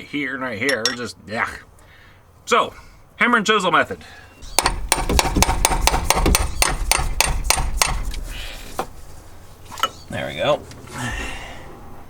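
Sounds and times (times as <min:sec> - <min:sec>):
hammer striking metal chisel: 0:04.6 - 0:08.0.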